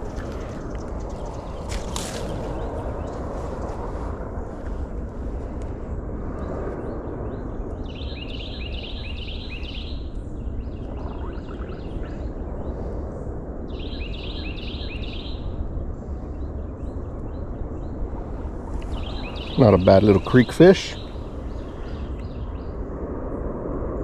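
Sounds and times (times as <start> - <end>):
songbird chirping: 0.0 - 4.1, 7.7 - 12.2, 13.7 - 15.5, 16.4 - 22.8
rushing outdoor noise: 0.0 - 24.0.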